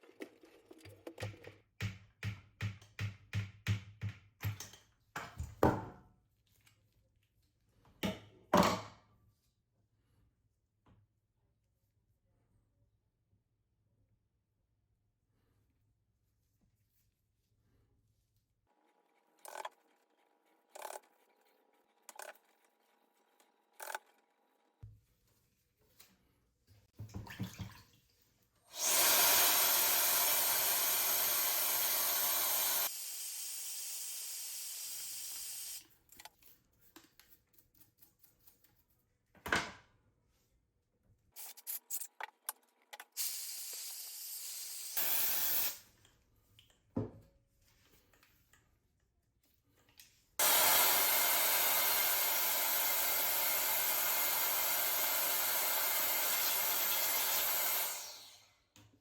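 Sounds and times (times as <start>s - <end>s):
water running hard: 28.8s - 32.9s.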